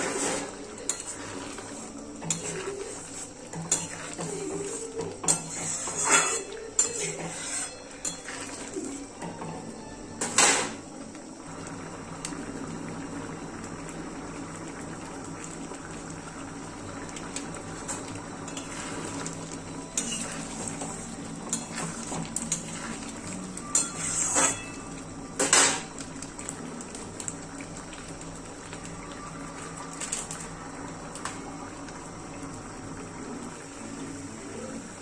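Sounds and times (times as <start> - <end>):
metal spoon scraping pan: 0.0 - 8.6, 23.7 - 24.7
curry bubbling: 0.0 - 9.8, 10.8 - 35.0.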